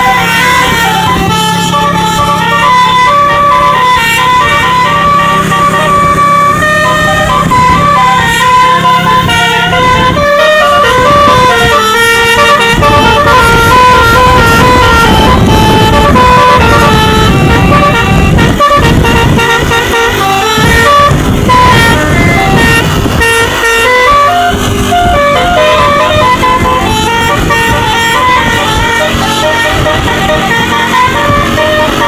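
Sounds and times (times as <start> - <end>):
bus musical air horn melody: 0.0 - 32.0.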